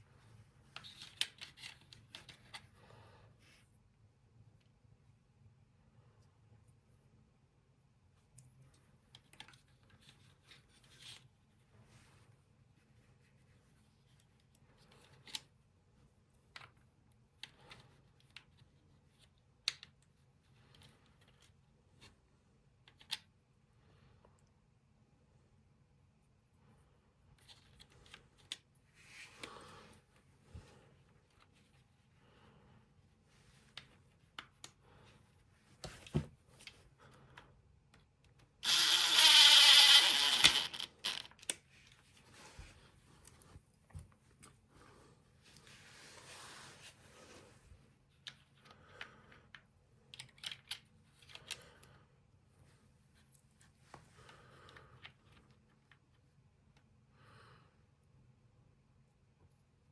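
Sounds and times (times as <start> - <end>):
small parts clicking and knocking: 37.9 - 42.0, 48.2 - 51.6
plastic parts clicking: 38.3 - 41.6
power drill running: 38.6 - 40.8.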